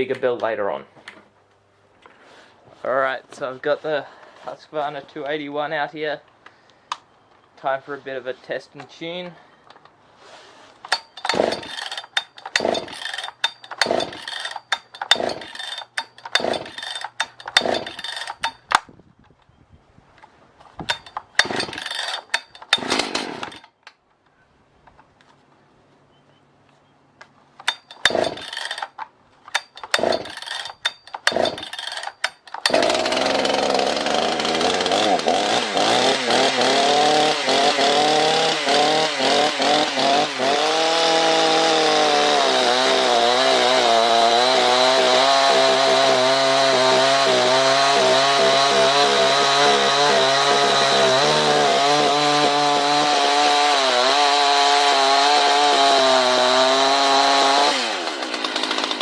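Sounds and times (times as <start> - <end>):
starter cord pulls: 10.8 - 18.9, 20.7 - 24.0, 27.6 - 34.0
chainsaw engine revving: 10.9 - 18.7, 20.9 - 23.7, 27.6 - 29.0, 29.6 - 59.0.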